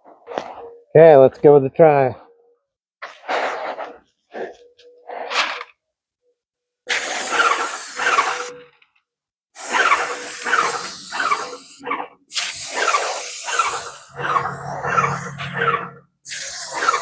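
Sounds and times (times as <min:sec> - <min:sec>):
paint sprayer hissing: 0:06.9 - 0:08.6, 0:09.6 - 0:17.0.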